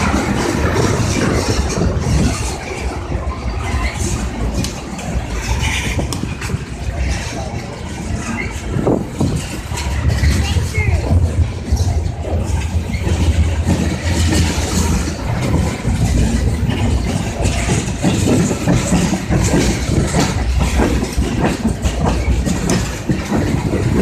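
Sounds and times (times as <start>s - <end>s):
train clanks and knocks: 0.0s - 24.0s
train passing rumble: 0.0s - 24.0s.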